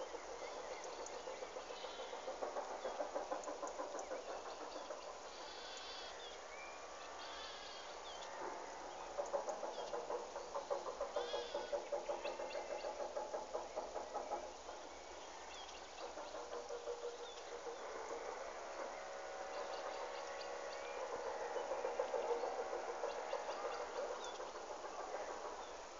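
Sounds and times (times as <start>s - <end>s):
fluttering animal calls: 7.0s - 25.9s.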